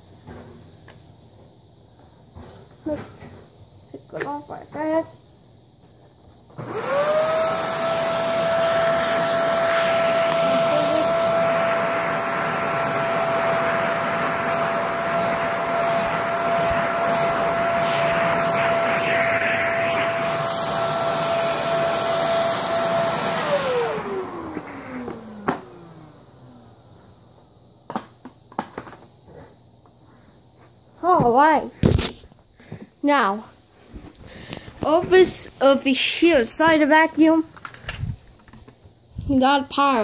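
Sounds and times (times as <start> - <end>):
vacuum cleaner motor whine: 6.5 - 29.5
rushing suction noise: 6.7 - 25.0.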